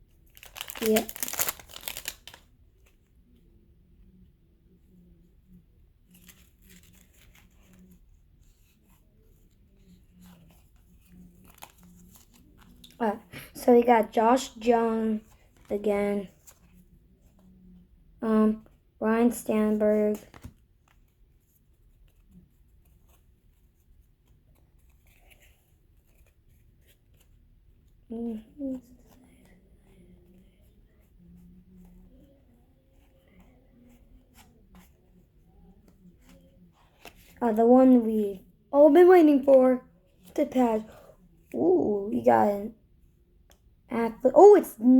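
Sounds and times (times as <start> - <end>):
trading cards rustling and clicking: 0.2 - 3.1, 6.1 - 13.5, 20.1 - 21.2, 21.8 - 28.0.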